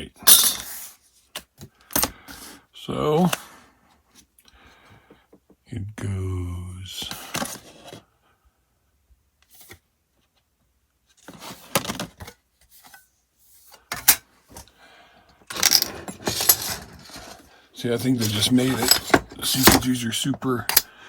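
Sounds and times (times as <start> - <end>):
rustling of handled tools: 0.2 - 2.4, 15.4 - 20.9.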